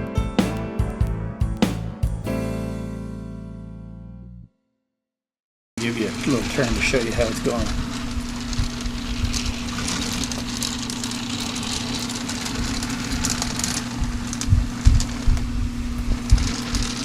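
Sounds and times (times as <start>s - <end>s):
steady mechanical hum: 5.8s - 17.0s.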